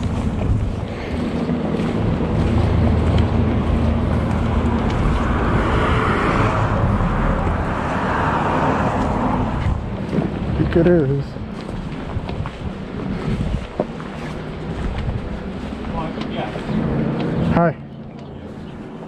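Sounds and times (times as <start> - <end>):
rushing noise: 0.0 - 10.1
engine humming: 0.0 - 19.0.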